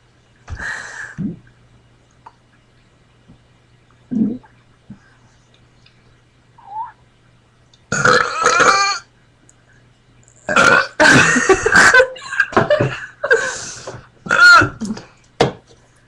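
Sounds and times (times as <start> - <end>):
person burping loudly: 7.9 - 9.1, 10.4 - 12.0, 14.3 - 15.0.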